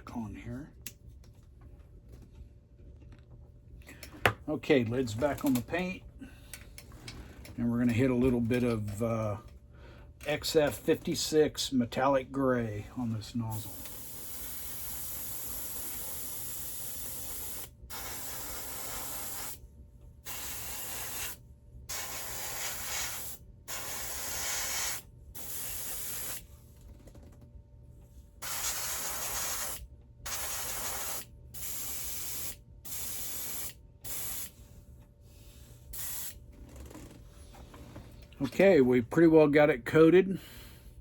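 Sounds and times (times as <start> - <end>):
airbrush spraying: 13.6 - 19.6, 20.3 - 26.4, 28.4 - 34.6, 36.0 - 36.4.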